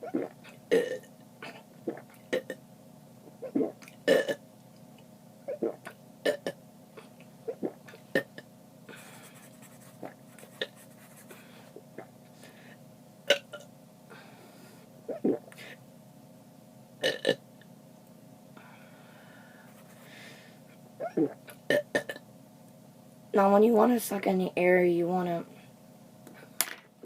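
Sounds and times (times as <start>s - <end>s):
person burping: 0.0s - 2.6s, 3.4s - 4.4s, 5.5s - 6.6s, 13.3s - 13.6s, 15.1s - 15.6s, 17.0s - 17.4s, 21.0s - 22.2s.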